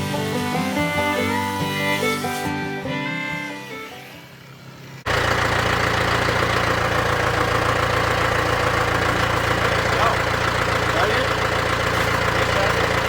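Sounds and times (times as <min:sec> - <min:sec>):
fiddle and banjo music: 0:00.0 - 0:04.0
sawmill engine running: 0:00.0 - 0:13.0.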